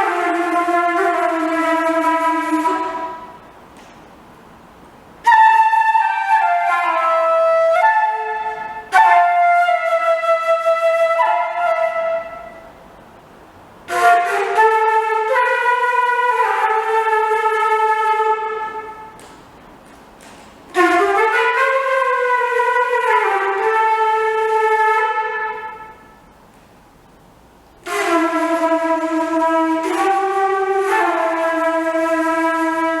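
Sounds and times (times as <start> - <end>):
slow wind-instrument melody: 0.0 - 3.6, 5.2 - 12.9, 13.8 - 19.2, 20.7 - 26.4, 27.8 - 33.0.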